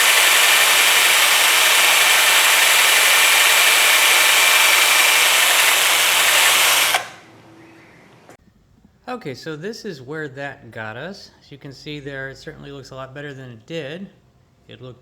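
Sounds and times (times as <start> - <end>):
drill sanding disc on metal: 0.0 - 7.2.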